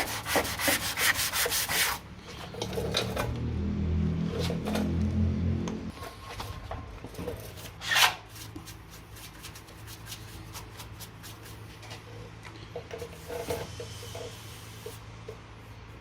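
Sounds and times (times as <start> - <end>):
hand sanding scratchy strokes: 0.0 - 2.0, 7.8 - 11.7.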